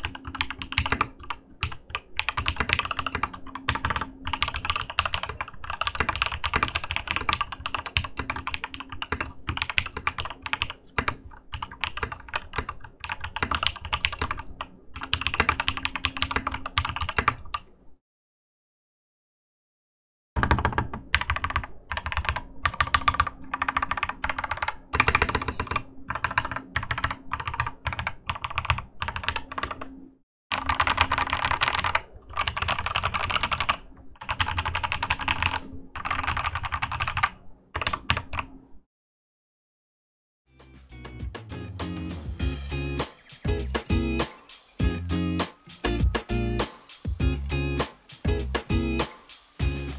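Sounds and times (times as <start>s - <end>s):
mechanical keyboard typing: 0.0s - 17.7s, 20.4s - 29.9s, 30.5s - 38.5s.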